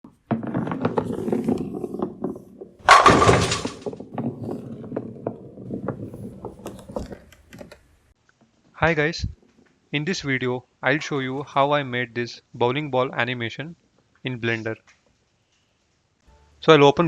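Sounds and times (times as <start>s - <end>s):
bowling ball rolling: 0.0s - 8.1s
pins clattering: 0.1s - 7.8s
ball crashing into pins: 0.1s - 7.9s.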